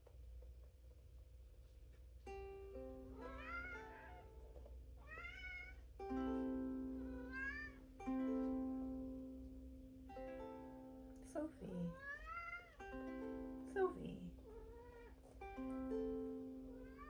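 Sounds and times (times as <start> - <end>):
ukulele strummed chords: 2.2 - 5.0, 5.9 - 11.9, 12.8 - 14.4, 15.3 - 17.0
cat meowing: 3.2 - 4.4, 5.0 - 5.9, 7.0 - 8.0, 11.8 - 12.8, 14.4 - 15.2, 16.6 - 17.0.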